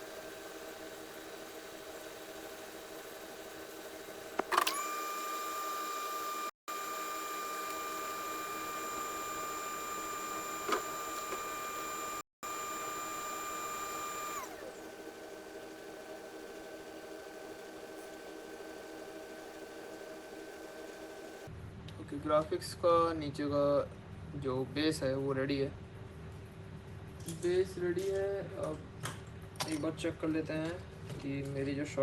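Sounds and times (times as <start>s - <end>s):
hot air blower whining: 4.2s - 21.5s.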